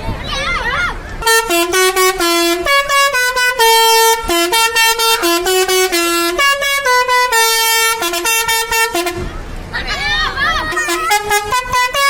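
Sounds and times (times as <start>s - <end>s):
bus multi-tone horn tune: 1.2s - 9.5s, 10.7s - 12.0s.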